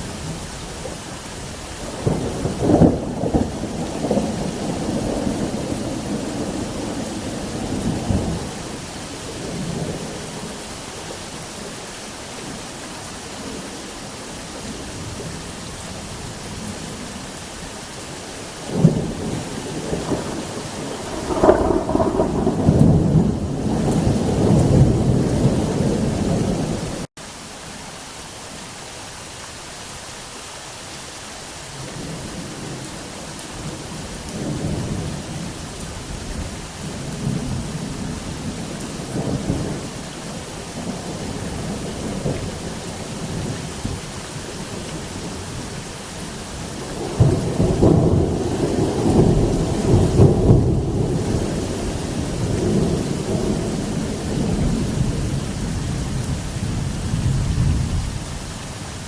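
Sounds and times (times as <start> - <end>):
heavy rain: 0.0 - 59.0
thunder rumbling: 1.8 - 10.6, 18.6 - 27.1, 46.5 - 58.4.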